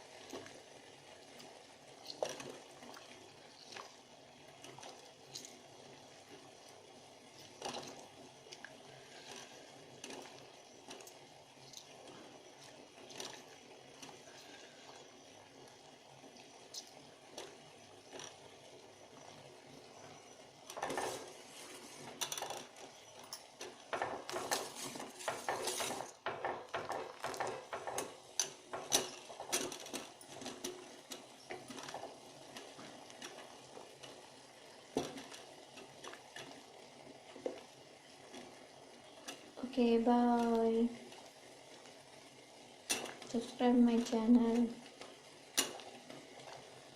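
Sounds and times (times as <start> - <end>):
utensils clinking on a cooking pot: 22.2 - 32.1, 42.9 - 43.3.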